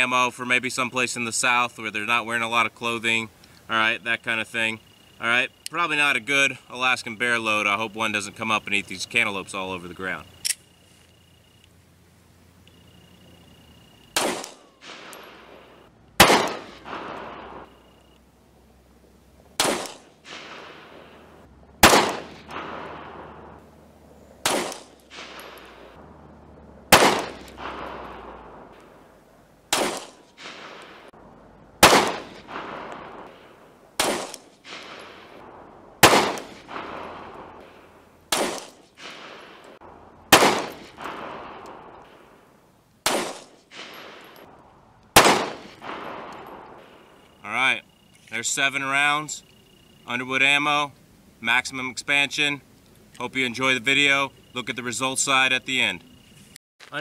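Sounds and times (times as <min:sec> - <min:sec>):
pistol shots echoing: 0:14.1 - 0:18.2, 0:19.6 - 0:31.1, 0:31.8 - 0:47.2.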